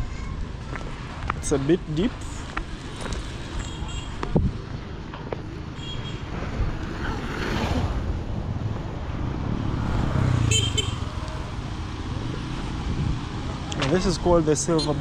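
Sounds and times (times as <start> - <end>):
road traffic passing: 0.0 - 15.0.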